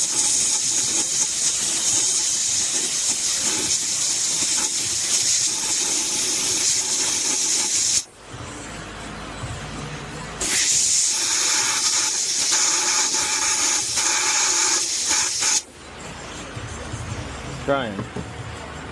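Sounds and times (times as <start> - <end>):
compressed air hissing: 0.0 - 8.1, 10.4 - 15.7
dull background noise: 8.0 - 10.5, 15.5 - 18.9.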